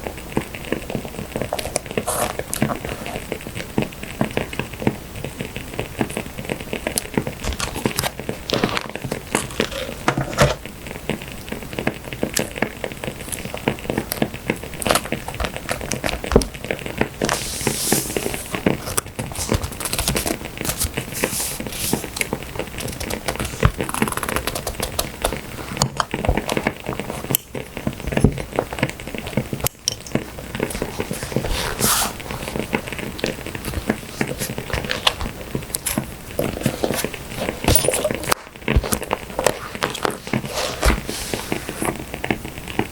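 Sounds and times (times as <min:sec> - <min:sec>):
firewood crackling: 0:00.0 - 0:42.9
paper rustling and crinkling: 0:07.3 - 0:10.7, 0:13.2 - 0:42.9.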